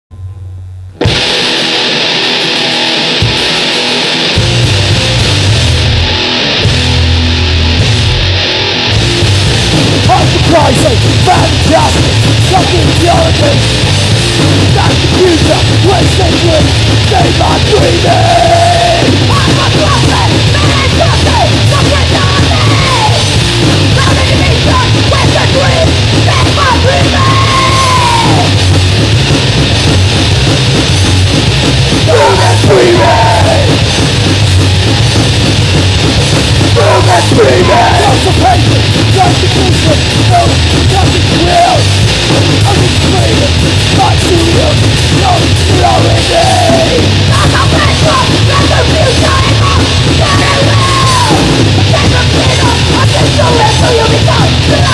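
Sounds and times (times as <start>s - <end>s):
distorted bass: 0.0s - 54.9s
distorted guitars: 0.0s - 54.9s
fast drums: 0.9s - 54.9s
screamed vocals: 14.7s - 23.3s, 23.9s - 28.6s, 32.1s - 33.8s, 36.8s - 42.0s, 42.6s - 54.9s.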